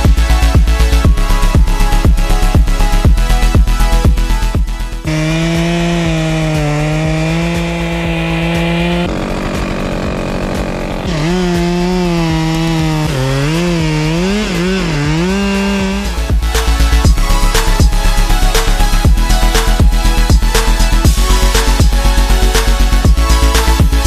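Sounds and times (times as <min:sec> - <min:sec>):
music with a beat: 0:00.0 - 0:05.0, 0:14.3 - 0:24.0
chainsaw revving: 0:04.8 - 0:24.0.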